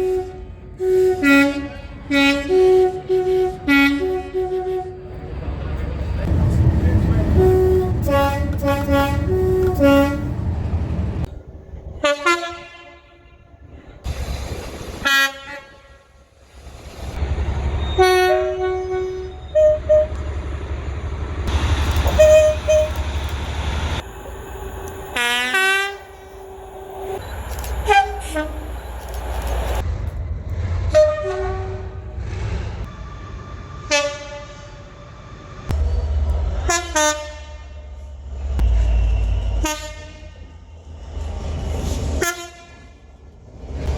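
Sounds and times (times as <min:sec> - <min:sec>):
train horns blasting: 0:00.0 - 0:05.4, 0:06.3 - 0:11.3, 0:12.0 - 0:14.0, 0:15.0 - 0:16.3, 0:17.7 - 0:20.3, 0:21.5 - 0:23.4, 0:24.7 - 0:29.8, 0:30.9 - 0:32.2, 0:33.8 - 0:34.9, 0:36.6 - 0:40.6, 0:42.2 - 0:43.1
trains rumbling: 0:00.0 - 0:43.9.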